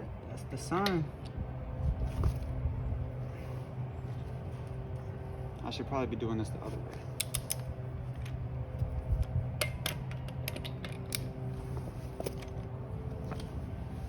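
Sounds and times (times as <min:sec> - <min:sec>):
steady low hum: 0:00.0 - 0:14.0
torque wrench clicks: 0:07.2 - 0:07.7.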